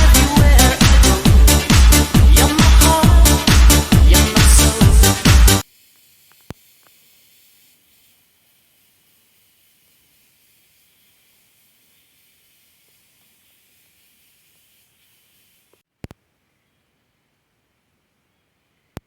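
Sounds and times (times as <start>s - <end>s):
faint steady hiss: 5.6s - 19.0s.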